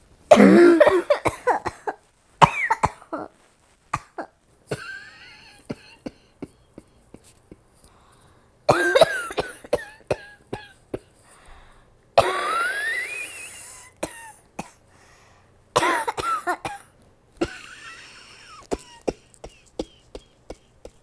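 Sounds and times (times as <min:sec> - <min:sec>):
woman coughing: 0:00.3 - 0:03.4, 0:04.0 - 0:06.6, 0:08.7 - 0:11.1, 0:12.2 - 0:14.8, 0:15.8 - 0:19.6
wheezing breath: 0:11.2 - 0:12.0, 0:14.9 - 0:15.6.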